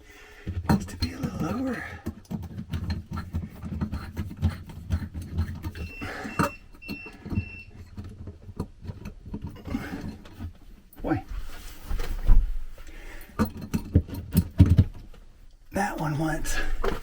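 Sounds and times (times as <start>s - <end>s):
light fitting clicking and rattling: 13.4s - 15.2s.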